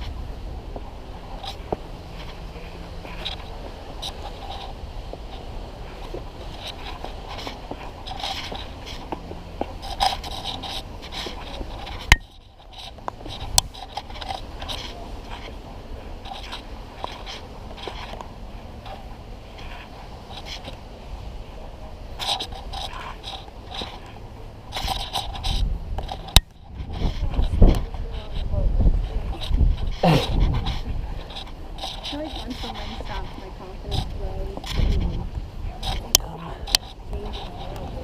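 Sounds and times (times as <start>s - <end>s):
low wind rumble: 0.0s - 38.0s
microphone handling noise: 22.0s - 38.0s.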